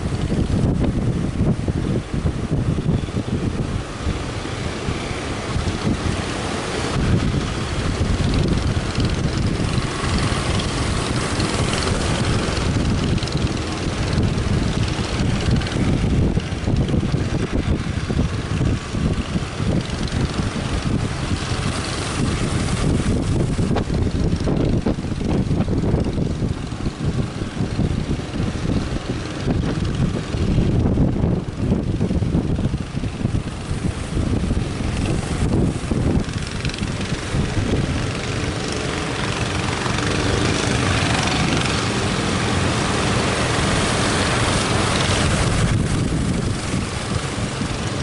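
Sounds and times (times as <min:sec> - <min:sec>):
boat engine drone: 0:00.0 - 0:48.0
rushing water: 0:00.0 - 0:48.0
wind buffeting microphone: 0:00.0 - 0:48.0.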